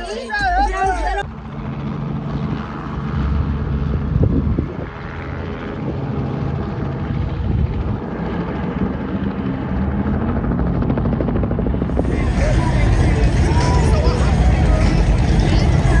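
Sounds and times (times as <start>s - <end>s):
large engine humming: 8.5s - 16.0s.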